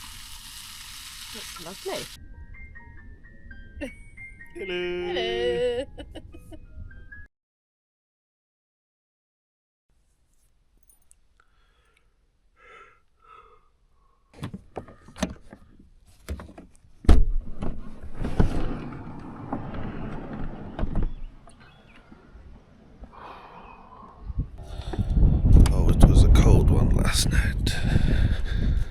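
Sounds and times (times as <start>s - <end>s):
heavy door thunk: 17.1s - 17.8s
sliding door rumbling: 17.5s - 21.3s.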